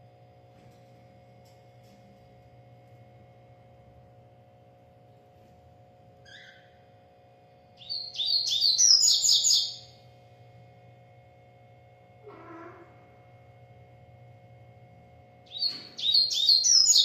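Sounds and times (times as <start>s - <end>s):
bird singing chattering notes: 7.8s - 9.9s, 15.5s - 17.0s.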